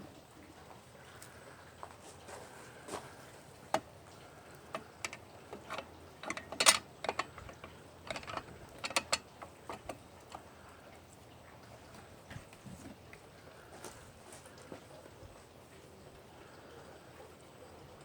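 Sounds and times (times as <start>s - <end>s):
sharp clicks and light knocks: 3.6s - 10.5s.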